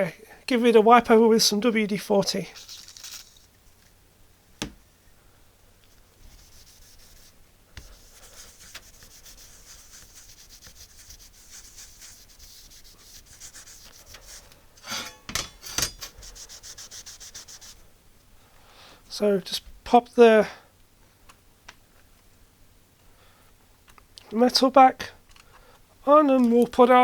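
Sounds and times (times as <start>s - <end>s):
cloth rubbing on metal: 5.9s - 17.8s
metal knocks and clatters: 14.8s - 16.1s.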